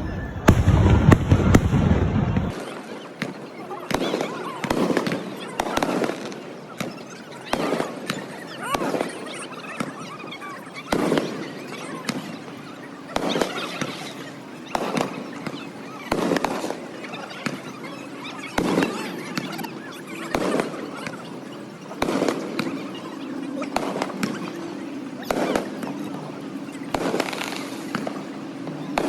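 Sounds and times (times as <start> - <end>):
firework booms: 0.0 - 2.7.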